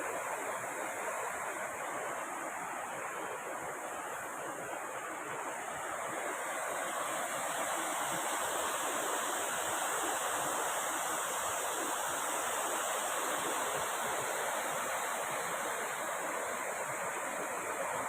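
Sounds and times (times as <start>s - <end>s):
waterfall rushing water: 0.0s - 18.0s.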